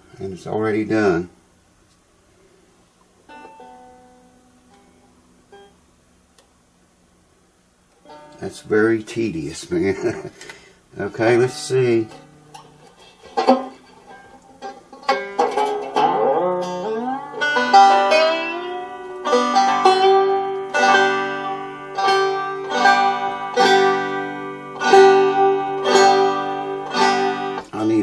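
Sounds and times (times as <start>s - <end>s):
banjo strings plucked: 8.0s - 8.8s, 11.1s - 28.0s.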